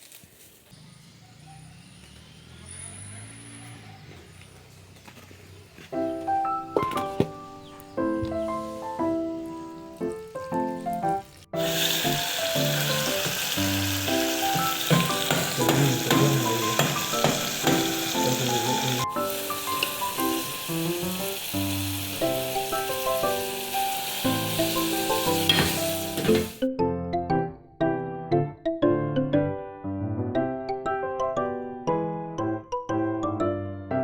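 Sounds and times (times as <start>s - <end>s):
gentle piano music: 5.9s - 34.0s
food sizzling in a pan: 8.6s - 26.6s.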